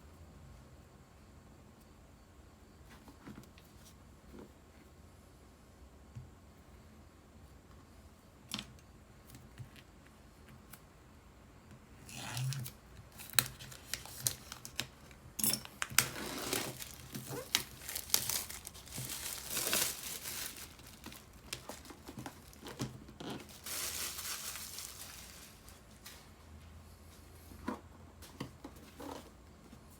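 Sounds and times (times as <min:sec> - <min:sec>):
packaging crinkling and tearing: 0:12.0 - 0:26.2.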